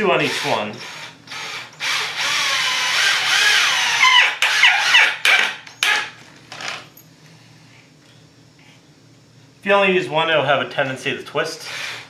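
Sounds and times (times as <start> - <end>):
cordless drill driving screws: 0.3 - 6.0, 11.7 - 12.0.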